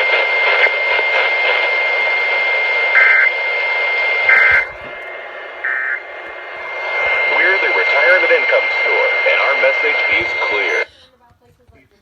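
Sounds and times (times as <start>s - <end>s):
radio static: 0.0s - 10.9s
steady high whistle: 0.0s - 10.9s
warbling two-tone data chirps: 2.4s - 10.8s.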